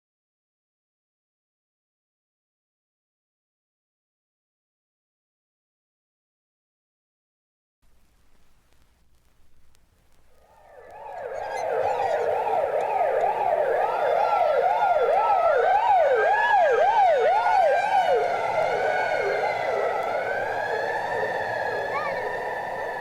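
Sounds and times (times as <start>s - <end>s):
siren yelping and wailing: 10.5s - 23.0s.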